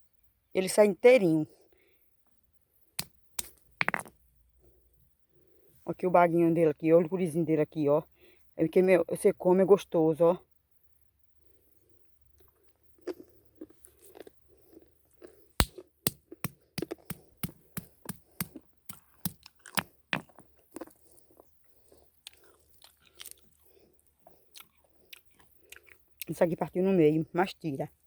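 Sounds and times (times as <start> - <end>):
soft chewing: 12.3 - 26.3
nut kernel crunching: 12.4 - 26.4.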